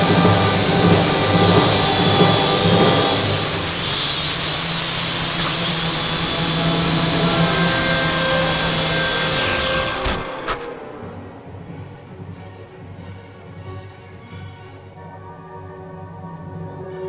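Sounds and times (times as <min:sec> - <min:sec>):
drone propellers whirring: 0:00.0 - 0:11.2.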